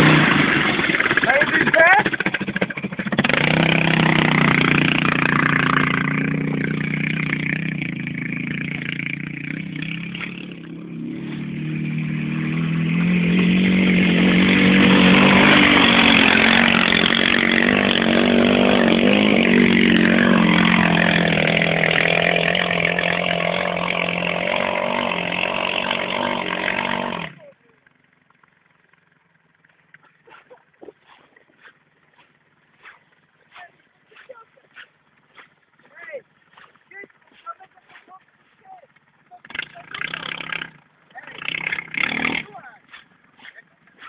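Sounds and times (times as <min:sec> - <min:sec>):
atv engine revving: 0:00.0 - 0:44.0.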